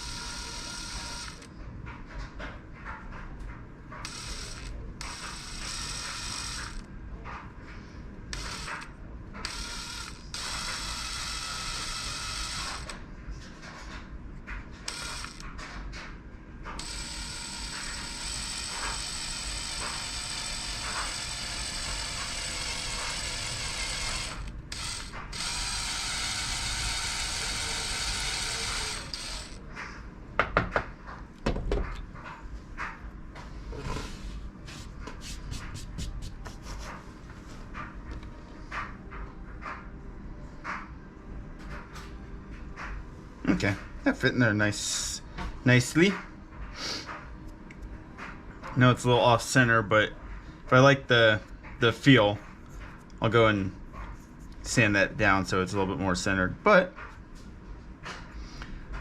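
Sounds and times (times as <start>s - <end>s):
drill boring into plastic: 0.0s - 1.5s, 4.0s - 6.8s, 8.3s - 13.0s, 14.9s - 15.4s, 16.8s - 29.6s.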